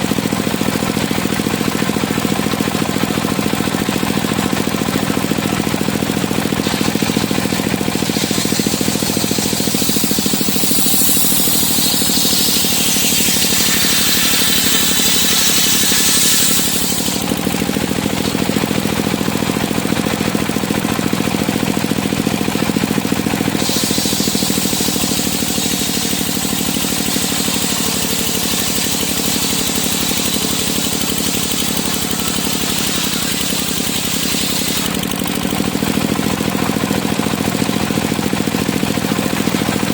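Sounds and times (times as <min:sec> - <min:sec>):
sawmill engine running: 0:00.0 - 0:39.9
saw blade hissing through wood: 0:06.0 - 0:20.0, 0:22.3 - 0:35.1.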